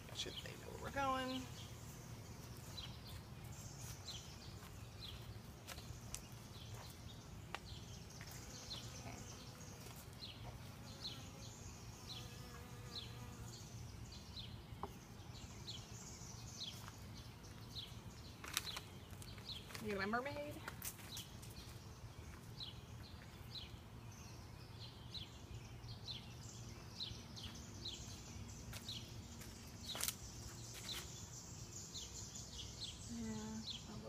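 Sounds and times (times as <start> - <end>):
small bird chirping: 0.0 - 34.0
honeybees buzzing: 7.7 - 14.4.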